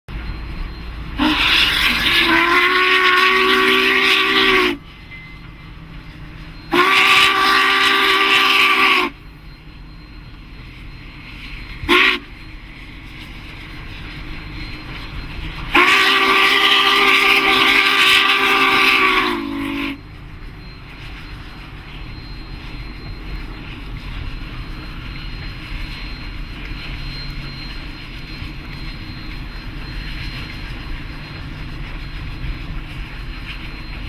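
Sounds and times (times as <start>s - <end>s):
low rumble of moving train: 0.1s - 34.0s
steam whistle blasts: 1.2s - 4.9s, 6.6s - 9.2s, 11.8s - 12.4s, 15.6s - 20.1s.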